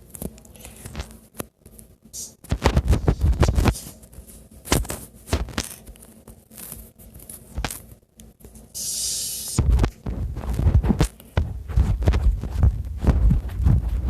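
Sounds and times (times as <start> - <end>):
short hiss: 8.8 - 9.6
low thumps and rumbling: 9.6 - 14.0.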